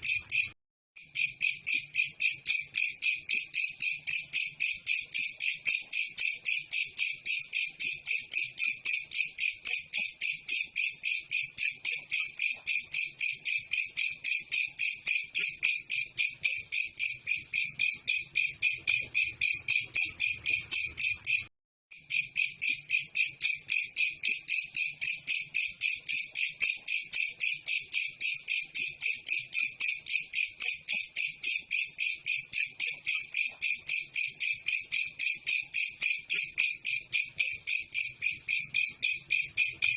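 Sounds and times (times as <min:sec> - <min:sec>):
insect singing in shrill pulses: 0:15.8 - 0:22.3.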